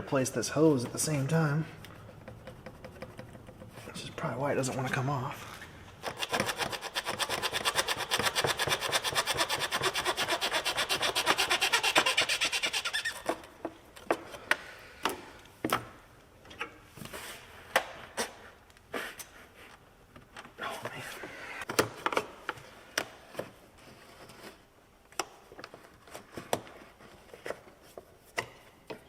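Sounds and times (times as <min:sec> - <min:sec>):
rubber hose rubbing on fitting: 0:06.1 - 0:13.3.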